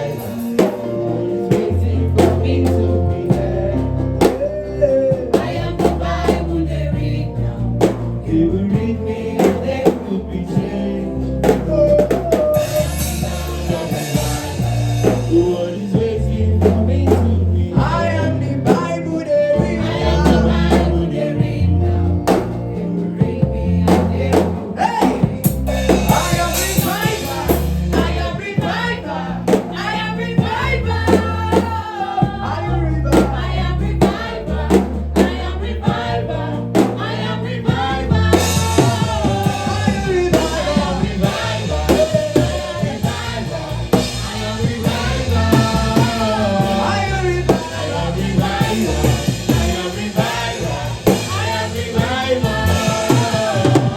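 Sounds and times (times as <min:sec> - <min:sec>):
bass line: 0:00.0 - 0:53.9
drums: 0:00.0 - 0:53.9
voices singing: 0:00.0 - 0:53.9.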